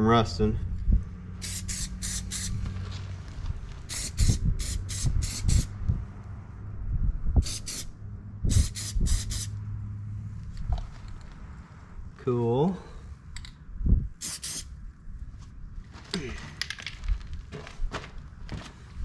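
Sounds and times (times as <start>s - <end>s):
spray paint hissing: 1.4s - 2.6s, 3.8s - 5.8s, 7.4s - 7.9s, 8.5s - 9.6s, 14.2s - 14.8s.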